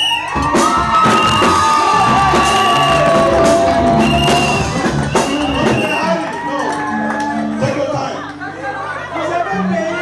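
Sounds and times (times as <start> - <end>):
loud music: 0.0 - 8.2
crowd cheering and whooping: 0.0 - 9.1.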